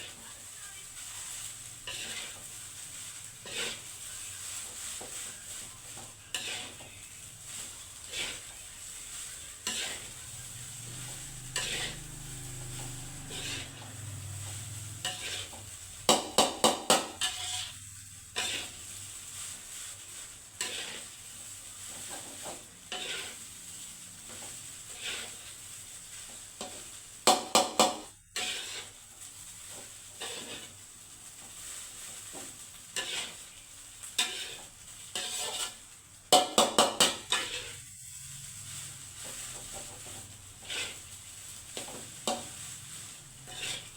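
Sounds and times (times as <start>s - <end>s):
spatula scraping rice in pan: 0.0s - 43.9s
steady sizzle: 0.0s - 43.9s
spatula knocking against pan: 16.1s - 17.2s, 36.3s - 37.2s.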